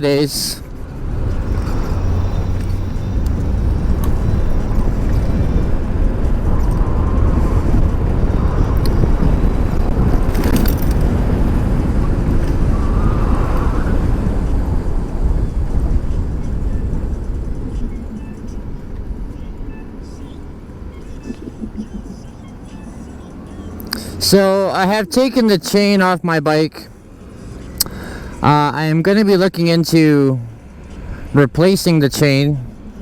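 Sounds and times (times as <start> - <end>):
wind buffeting microphone: 0.0 - 25.6
road and traffic noise: 0.0 - 33.0.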